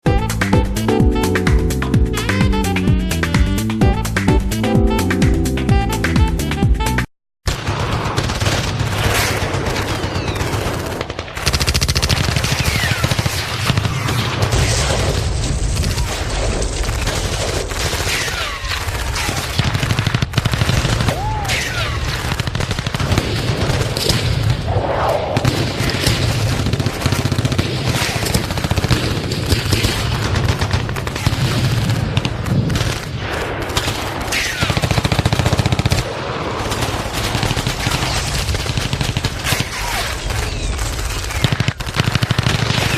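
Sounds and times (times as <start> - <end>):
machine-gun and rifle fire: 7.5 - 24.7, 25.4 - 42.9.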